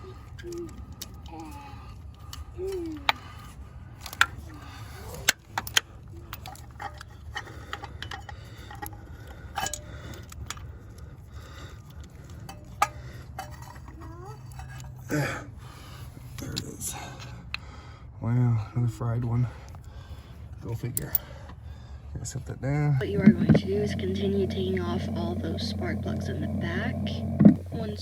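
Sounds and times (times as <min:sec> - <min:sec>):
steady low hum: 0:23.0 - 0:28.0.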